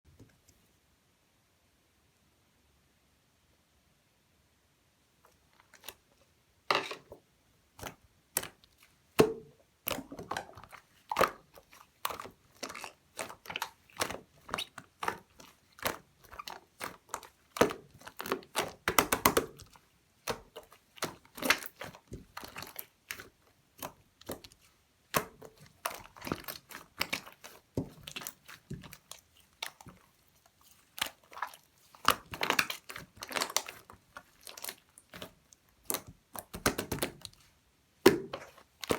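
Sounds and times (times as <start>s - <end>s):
slime being squished: 7.8s - 38.9s.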